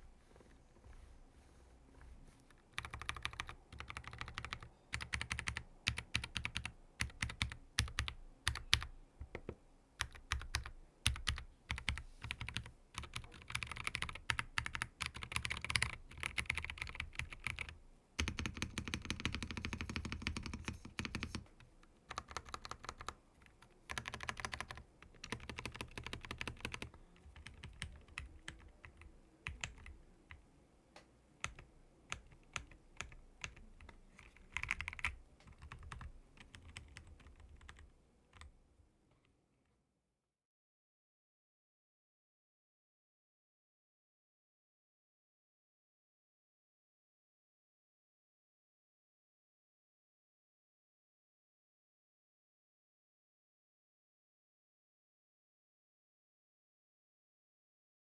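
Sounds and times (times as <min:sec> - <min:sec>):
typing on mechanical keyboard: 0:02.5 - 0:30.4, 0:31.4 - 0:38.5.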